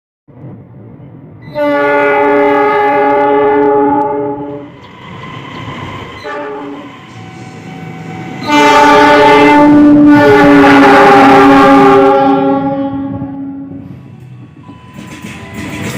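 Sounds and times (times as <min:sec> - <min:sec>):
air horn blasts: 0:01.5 - 0:04.6, 0:06.2 - 0:06.9, 0:08.4 - 0:13.8.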